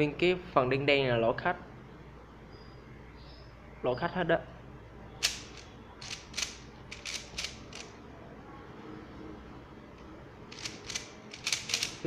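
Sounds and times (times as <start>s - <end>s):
speed cube plastic clacks: 5.2s - 7.9s, 10.5s - 12.0s.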